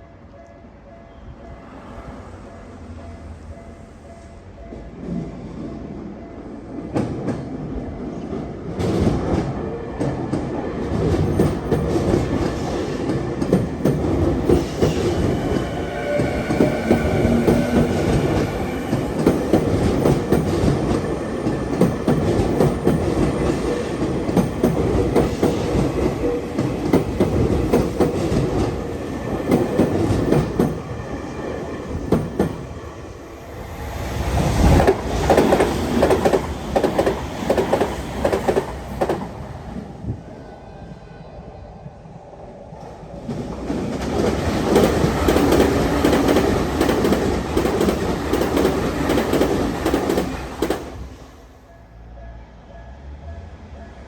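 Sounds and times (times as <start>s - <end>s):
train rumble: 0.0s - 40.8s, 41.4s - 54.0s
train wheels clattering: 8.7s - 32.7s, 34.4s - 39.4s, 43.4s - 51.1s.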